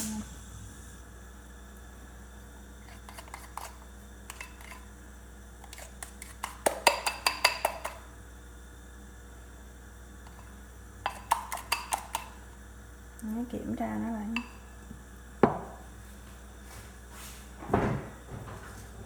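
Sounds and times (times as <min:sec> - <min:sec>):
utensil clinking against bowl: 0:04.3 - 0:04.8, 0:05.6 - 0:08.0, 0:11.0 - 0:12.4.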